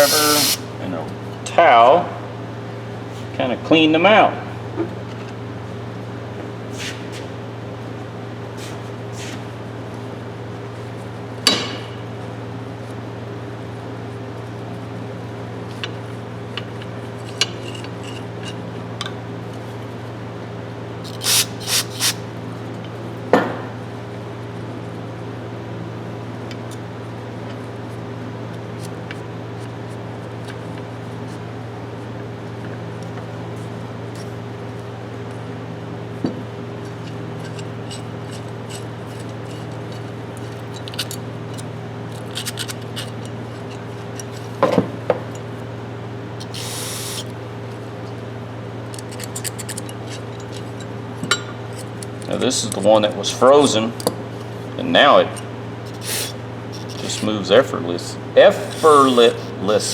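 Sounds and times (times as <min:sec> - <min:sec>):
short hissing bursts: 0:00.0 - 0:00.7, 0:21.2 - 0:22.2, 0:46.4 - 0:47.3, 0:55.9 - 0:57.2, 0:58.6 - 0:59.9
metal clicks and rubbing: 0:36.9 - 0:44.5, 0:46.4 - 0:47.3, 0:48.9 - 0:50.9, 0:55.9 - 0:57.3.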